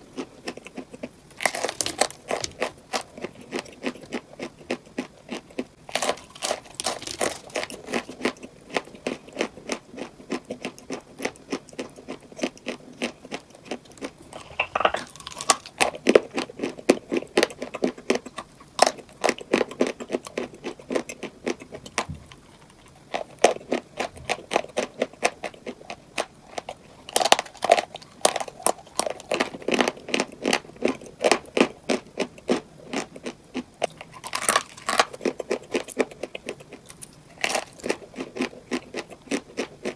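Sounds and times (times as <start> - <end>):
hard sweets crunching: 0.0 - 39.9.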